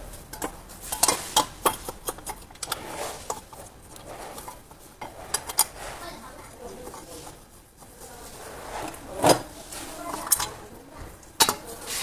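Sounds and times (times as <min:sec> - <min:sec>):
hand tools and metal parts clicking: 0:00.0 - 0:08.0.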